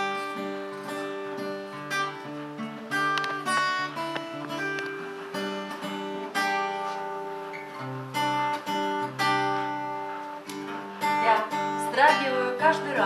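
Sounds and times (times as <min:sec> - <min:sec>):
acoustic guitar chords: 0:00.0 - 0:13.0.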